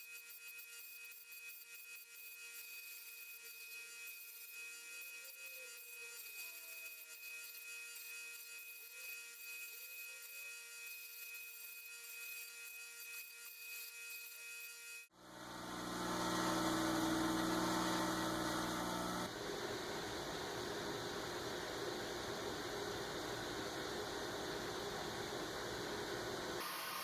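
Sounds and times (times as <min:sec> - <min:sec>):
power tool motor running: 0:15.1 - 0:19.3, 0:26.6 - 0:27.0.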